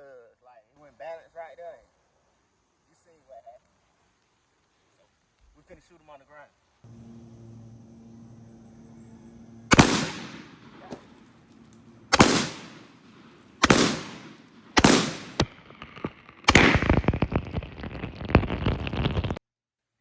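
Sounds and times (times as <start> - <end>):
dense crackle: 6.9 - 19.4
shotgun shots with echo: 9.7 - 15.5.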